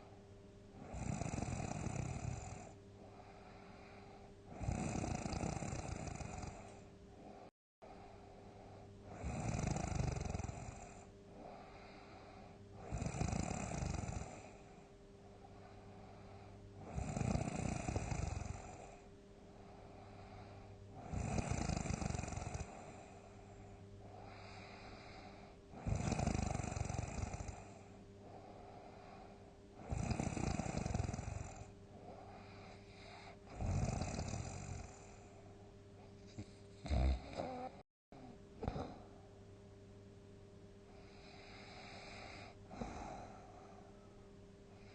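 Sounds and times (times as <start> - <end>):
quiet breathing: 0.0 - 39.5, 40.8 - 44.9
person snoring loudly: 0.8 - 2.8, 3.8 - 6.8, 9.1 - 11.9, 12.8 - 14.6, 16.8 - 19.0, 21.0 - 23.1, 24.2 - 27.8, 29.8 - 31.7, 32.3 - 35.2, 36.4 - 39.0, 41.0 - 43.5.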